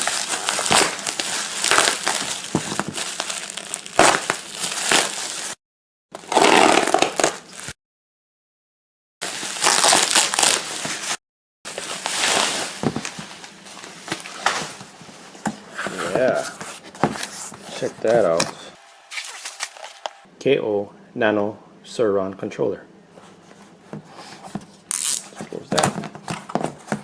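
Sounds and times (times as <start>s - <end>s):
packaging crinkling: 0.0s - 5.6s, 6.3s - 7.7s, 9.2s - 15.0s, 16.1s - 20.3s.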